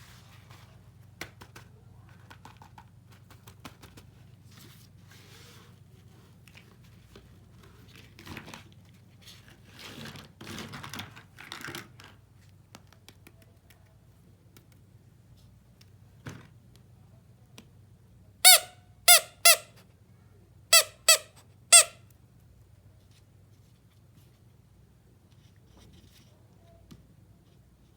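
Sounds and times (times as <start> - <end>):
loud squeaks: 18.5 - 19.7, 20.7 - 22.0.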